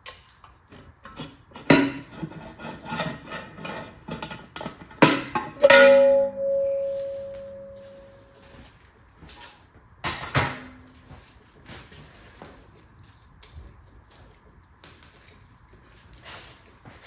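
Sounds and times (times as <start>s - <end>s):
ringing metallic tone: 5.6s - 8.6s.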